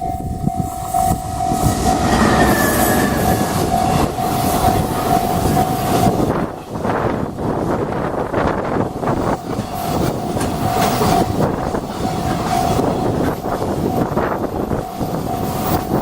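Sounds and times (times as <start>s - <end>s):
crossing warning bell ringing: 0.0s - 6.9s, 8.7s - 16.0s
train wheels clattering on rails: 0.0s - 16.0s.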